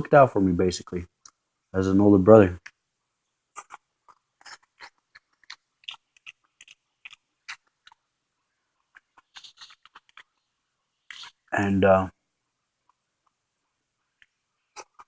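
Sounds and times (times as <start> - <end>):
person chewing food: 3.5 - 8.1, 8.7 - 11.5.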